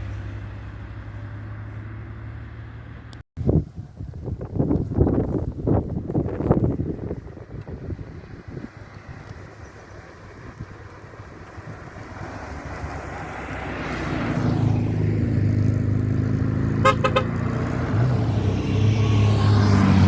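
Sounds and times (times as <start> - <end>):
rally car engines passing: 8.5 - 20.0
car horn short beeps: 16.8 - 17.3.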